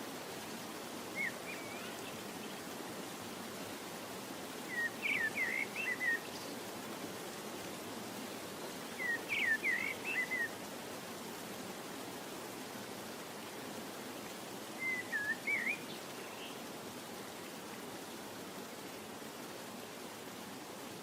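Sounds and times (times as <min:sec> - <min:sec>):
bird chirping song: 0:01.2 - 0:02.6, 0:04.7 - 0:06.6, 0:09.0 - 0:10.6, 0:14.8 - 0:16.6.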